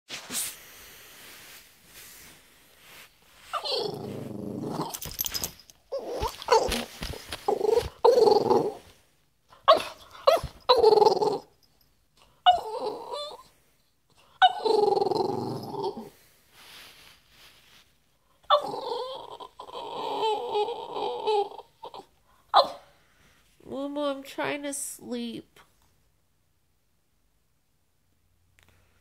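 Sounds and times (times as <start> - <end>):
dog growling and grumbling: 3.5 - 9.0, 9.7 - 11.5, 12.4 - 13.4, 14.4 - 16.2, 18.5 - 22.1.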